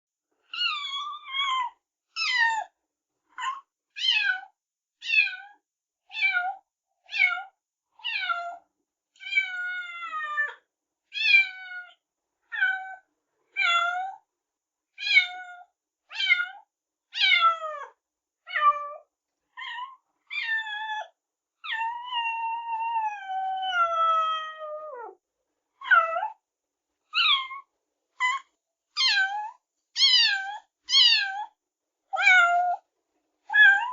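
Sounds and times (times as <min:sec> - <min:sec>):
kitten meowing: 0:27.1 - 0:27.6, 0:29.0 - 0:31.6, 0:32.2 - 0:32.8, 0:33.5 - 0:33.9.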